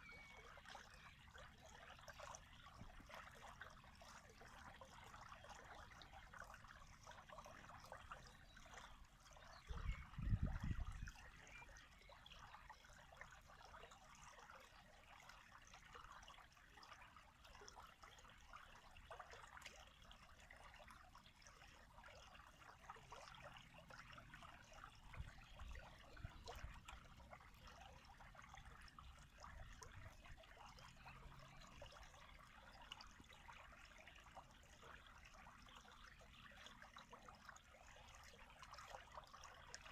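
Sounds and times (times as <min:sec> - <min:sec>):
water trickling: 0:00.0 - 0:39.9.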